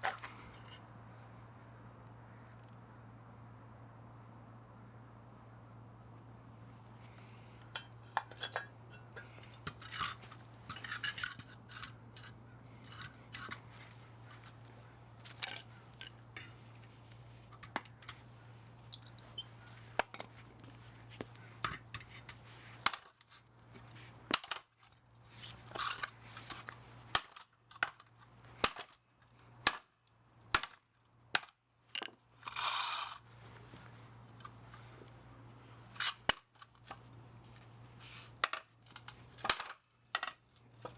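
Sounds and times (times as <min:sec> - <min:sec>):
hand tools clinking on metal: 0:07.7 - 0:14.6, 0:15.2 - 0:16.6.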